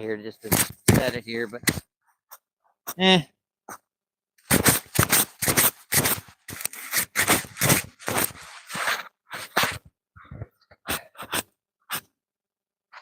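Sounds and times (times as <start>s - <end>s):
rough scraping or crunching: 4.5s - 9.8s.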